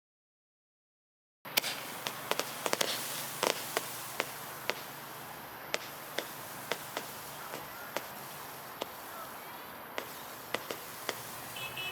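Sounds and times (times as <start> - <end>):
sharp irregular clicks: 1.5 - 5.0, 5.7 - 9.2, 9.9 - 11.3
steady hiss: 1.5 - 11.9.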